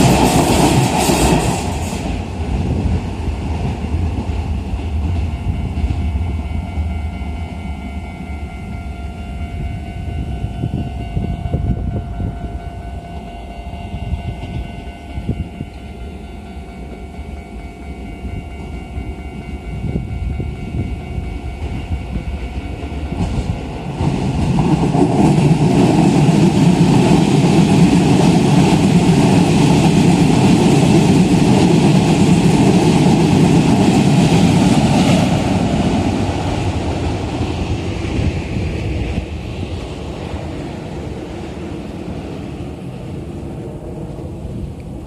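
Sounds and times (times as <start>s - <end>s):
train wheels rumbling on rails: 0.0s - 45.0s.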